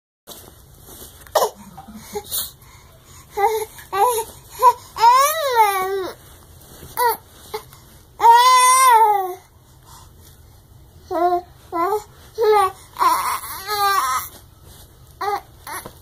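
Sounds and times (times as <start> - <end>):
baby fussing and crying: 1.3 - 6.3, 6.9 - 9.5, 11.0 - 14.5, 15.2 - 16.0.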